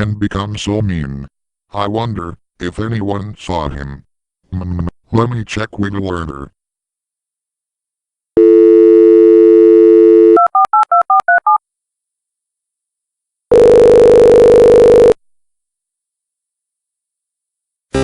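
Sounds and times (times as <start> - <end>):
telephone dial tone: 8.4 - 11.6, 13.5 - 15.2
telephone ringing: 8.4 - 11.6, 13.5 - 15.2.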